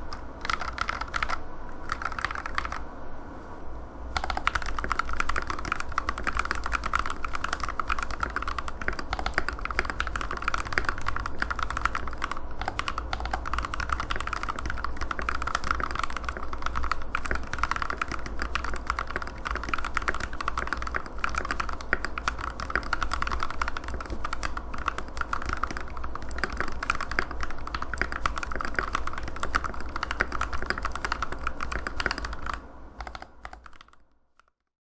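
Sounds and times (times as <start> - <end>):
mechanical keyboard typing: 0.0 - 2.8, 4.2 - 34.6.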